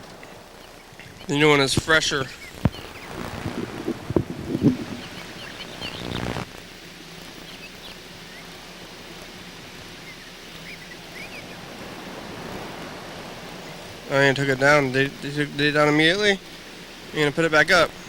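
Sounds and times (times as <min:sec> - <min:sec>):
steady hiss: 0:00.0 - 0:18.0
high bird chirps: 0:04.4 - 0:06.4.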